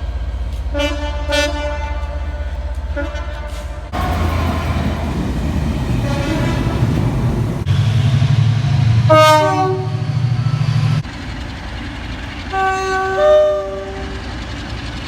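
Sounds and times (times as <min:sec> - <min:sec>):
locomotive rumble: 0:00.0 - 0:15.0
train horn chord: 0:00.7 - 0:07.7, 0:09.1 - 0:10.0, 0:12.5 - 0:14.2.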